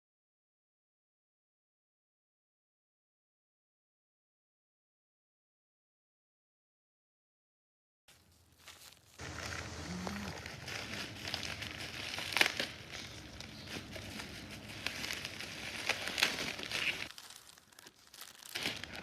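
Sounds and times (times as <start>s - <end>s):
packaging crinkling: 8.1s - 19.0s.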